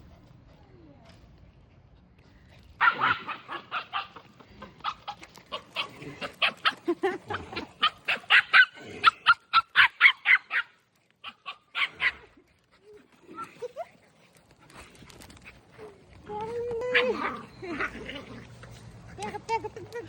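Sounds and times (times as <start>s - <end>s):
dog barking: 2.8s - 4.2s, 7.8s - 12.2s.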